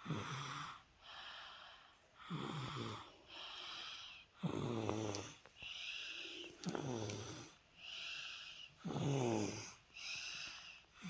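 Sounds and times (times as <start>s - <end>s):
low snoring grunt: 2.2s - 3.1s, 4.4s - 5.4s, 6.6s - 7.6s, 8.8s - 9.8s.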